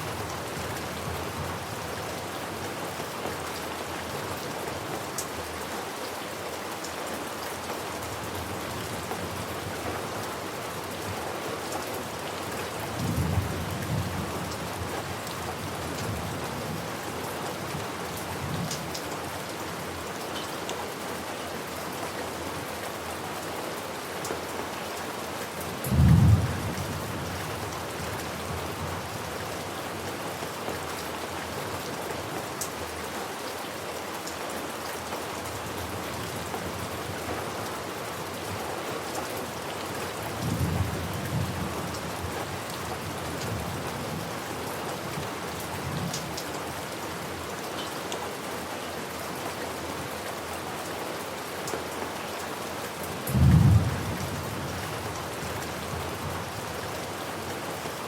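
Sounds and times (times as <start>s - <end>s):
steady rain falling: 0.0s - 58.0s
low thunder rumbling: 53.3s - 54.8s
loud thunderclap: 53.4s - 54.1s.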